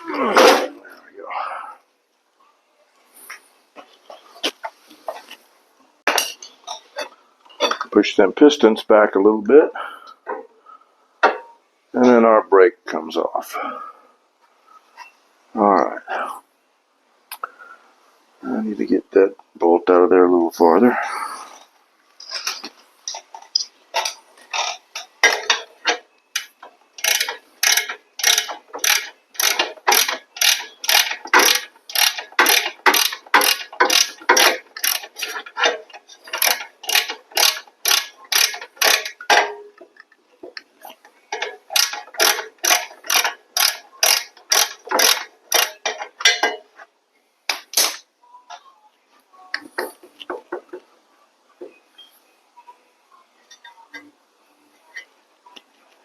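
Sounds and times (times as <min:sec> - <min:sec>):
ratchet wrench clicking: 0:23.1 - 0:39.5, 0:41.3 - 0:46.6.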